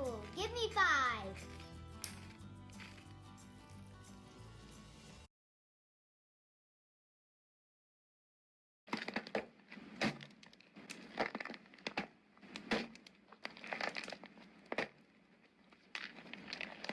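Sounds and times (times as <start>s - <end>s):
slime crackling and popping: 10.4s - 16.9s.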